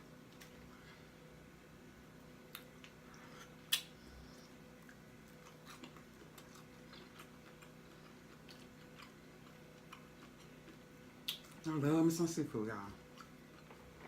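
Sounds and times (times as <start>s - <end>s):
person chewing food: 2.5s - 11.6s, 13.0s - 14.0s.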